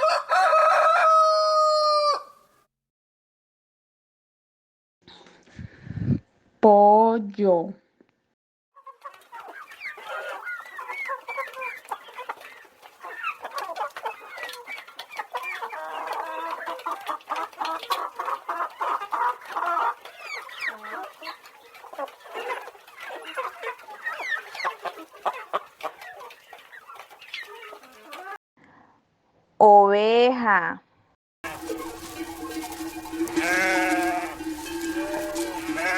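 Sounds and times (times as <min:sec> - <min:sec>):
chickens clucking: 0:08.8 - 0:28.4, 0:31.4 - 0:35.9.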